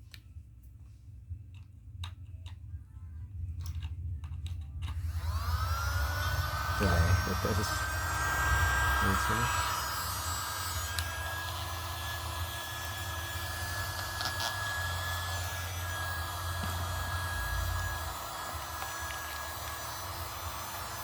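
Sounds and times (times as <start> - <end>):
small vacuum cleaner whining: 4.9 - 21.0.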